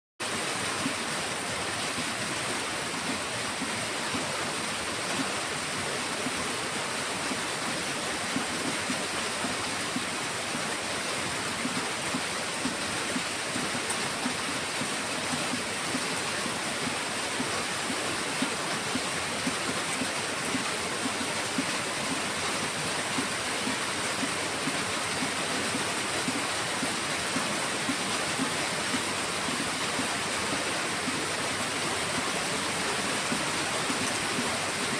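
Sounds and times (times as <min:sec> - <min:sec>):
heavy rain falling: 0:00.2 - 0:34.9.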